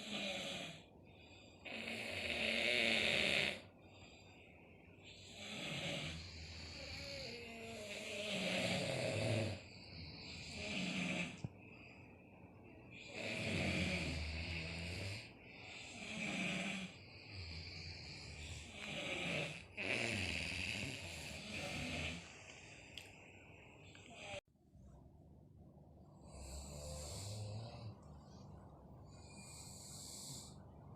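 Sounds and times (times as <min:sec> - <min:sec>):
people snoring: 0:00.0 - 0:03.7, 0:05.0 - 0:11.5, 0:12.9 - 0:22.7, 0:23.8 - 0:24.4, 0:26.2 - 0:28.4, 0:29.1 - 0:30.7.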